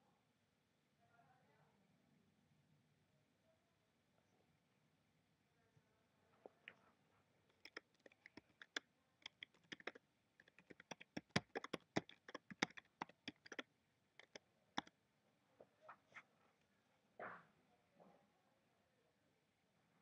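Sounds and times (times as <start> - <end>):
keyboard typing: 7.5 - 13.6, 14.2 - 14.9.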